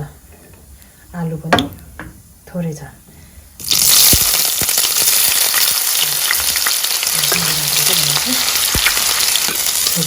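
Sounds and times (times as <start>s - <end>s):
potatoes sizzling in hot oil: 3.6s - 10.0s.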